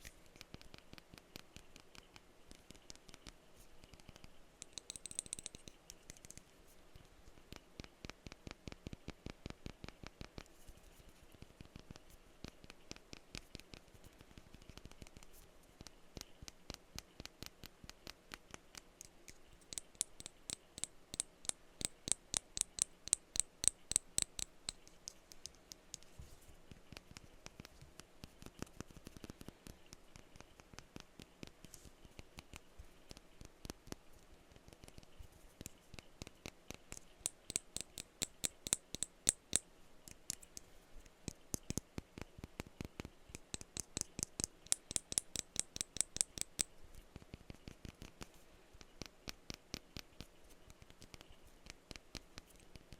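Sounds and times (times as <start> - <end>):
fingers tapping on glass bottles: 4.6 - 5.8, 19.6 - 25.5, 36.9 - 39.6, 43.4 - 46.7.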